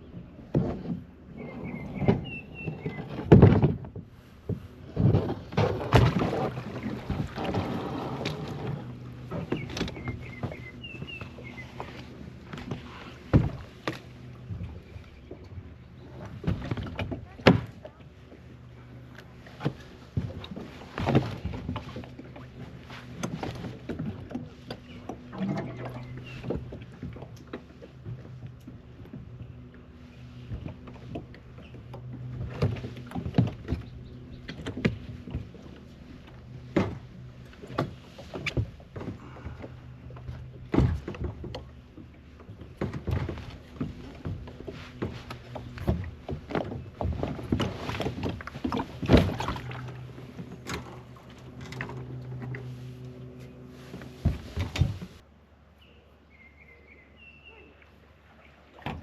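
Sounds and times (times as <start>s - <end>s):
water sloshing: 0.0s - 55.2s, 57.5s - 59.0s
paddle splashes and knocks: 0.2s - 55.2s, 57.8s - 59.0s
hollow knocks on kayak hull: 54.2s - 55.2s.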